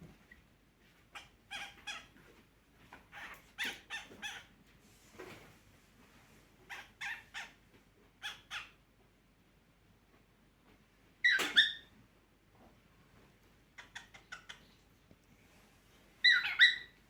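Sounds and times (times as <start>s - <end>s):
cockatiel squawk: 1.2s - 2.1s, 3.1s - 4.5s, 8.2s - 8.8s, 16.2s - 17.0s
cockatiel chirping: 11.2s - 11.9s, 13.8s - 14.8s, 16.2s - 17.0s.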